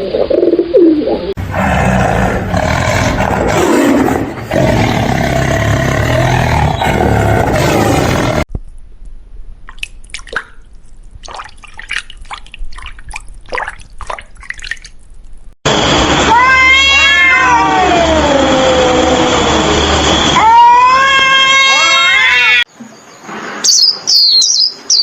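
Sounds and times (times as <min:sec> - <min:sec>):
loud noise: 0:01.4 - 0:08.5, 0:15.7 - 0:22.6
cat meowing: 0:16.3 - 0:18.0.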